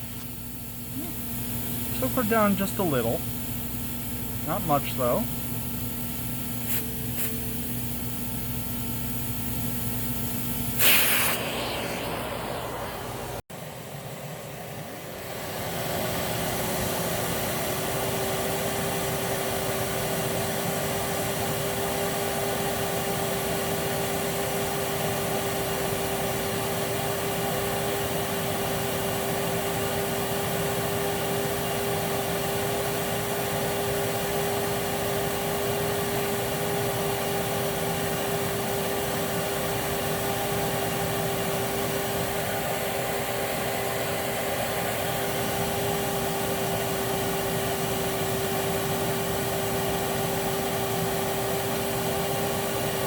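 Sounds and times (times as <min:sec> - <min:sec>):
vacuum motor whining: 0:00.0 - 0:53.0
rush of air: 0:10.8 - 0:16.2.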